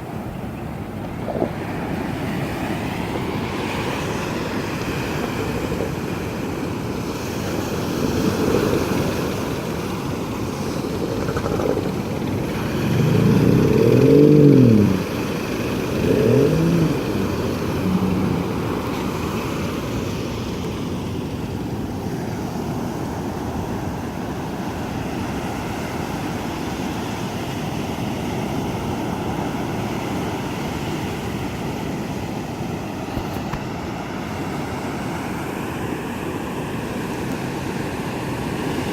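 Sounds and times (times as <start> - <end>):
surf: 0.0 - 33.9
wind noise: 0.2 - 26.1
motor revving: 10.5 - 20.2.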